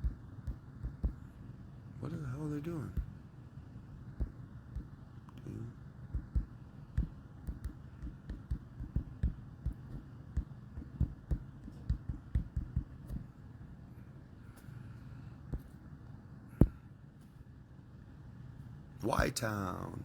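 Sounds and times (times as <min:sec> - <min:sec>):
fingertips tapping a touchscreen: 0:00.0 - 0:01.3, 0:02.2 - 0:03.2, 0:04.1 - 0:05.0, 0:06.1 - 0:13.3.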